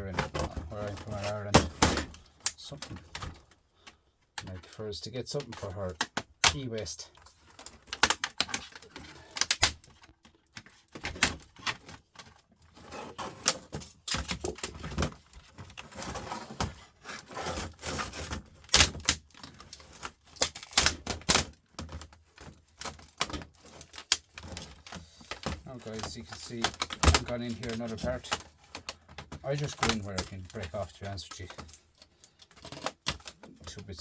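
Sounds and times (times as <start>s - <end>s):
plastic parts clicking and cracking: 0.0s - 34.0s
loud plastic snaps: 7.5s - 10.1s, 18.6s - 22.0s.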